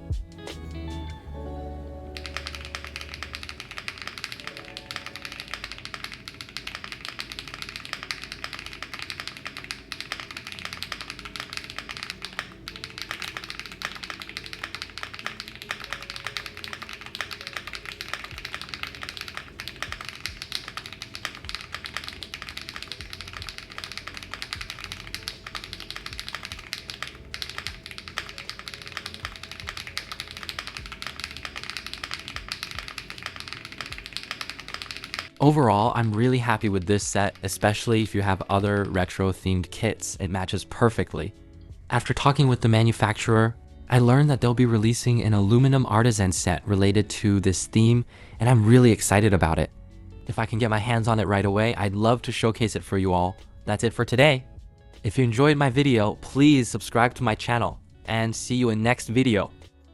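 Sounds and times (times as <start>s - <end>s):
mechanical keyboard typing: 2.2s - 37.7s.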